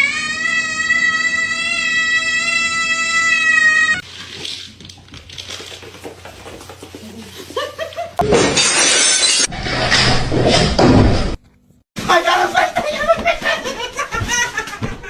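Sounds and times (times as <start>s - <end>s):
loud crash and shattering: 8.2s - 11.4s.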